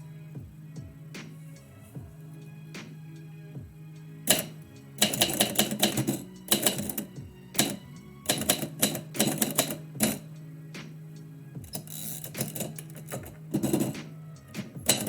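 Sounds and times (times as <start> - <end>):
typewriter keys striking: 4.3 - 10.2, 14.6 - 15.0.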